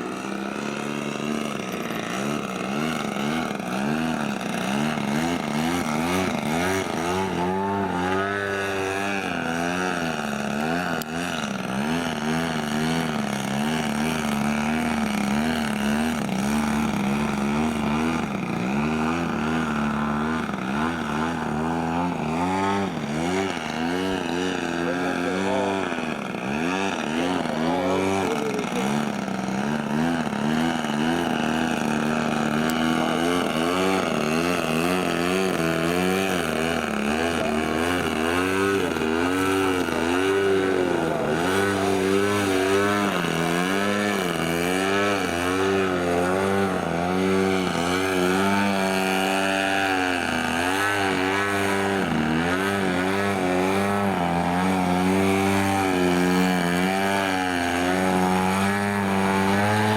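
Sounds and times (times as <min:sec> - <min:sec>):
model airplane engine: 0:00.0 - 0:59.9.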